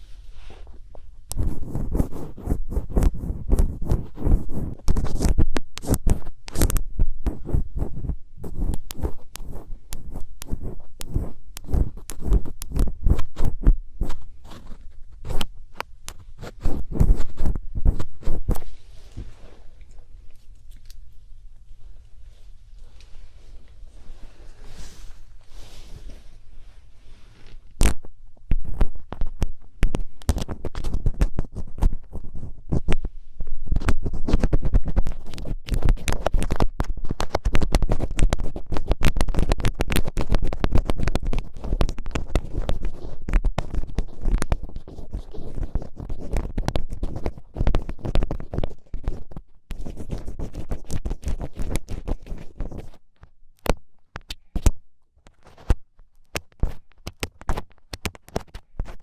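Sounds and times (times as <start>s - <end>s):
ear pick scraping in ear: 1.3s - 15.5s, 16.1s - 18.8s.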